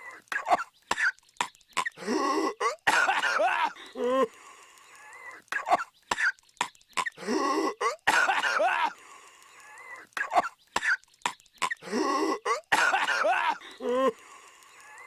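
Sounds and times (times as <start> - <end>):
cartoon character coughing: 0.4 - 1.2, 1.8 - 3.8, 5.6 - 6.4, 7.0 - 9.0, 10.2 - 11.0, 11.6 - 14.0.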